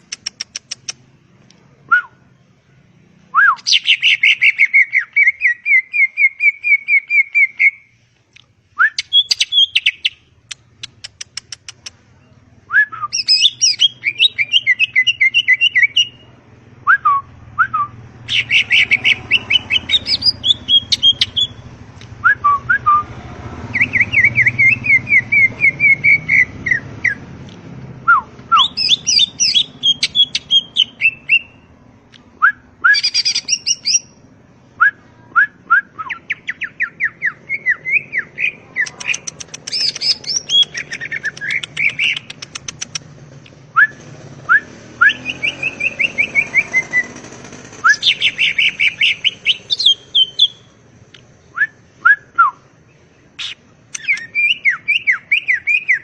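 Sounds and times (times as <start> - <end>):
bird singing chirps and trills: 3.5 - 7.9, 8.9 - 11.0, 13.0 - 16.3, 18.2 - 21.7, 23.6 - 27.3, 28.5 - 31.7, 32.9 - 34.2, 36.0 - 43.0, 45.1 - 50.7, 52.8 - 56.0.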